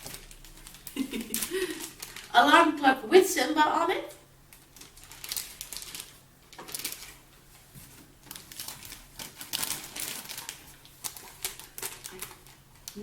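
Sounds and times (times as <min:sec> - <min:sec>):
packaging rustling and crinkling: 0:00.0 - 0:02.5, 0:04.5 - 0:13.0.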